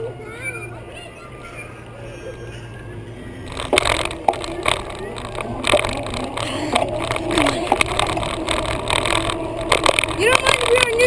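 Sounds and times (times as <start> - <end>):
steady low rumble: 2.6 - 11.0
bicycle knocks and rattles: 3.5 - 11.0.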